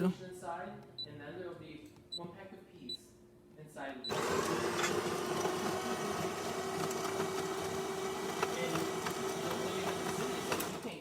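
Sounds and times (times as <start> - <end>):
coffee grinder grinding beans: 4.1 - 11.0.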